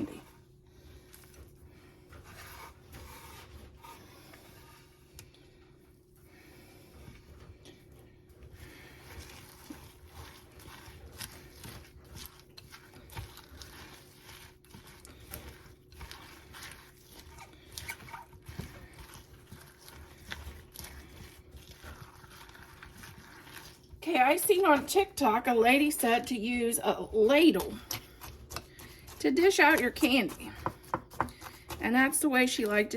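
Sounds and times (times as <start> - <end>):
spoon scraping in a bowl: 9.1 - 23.8.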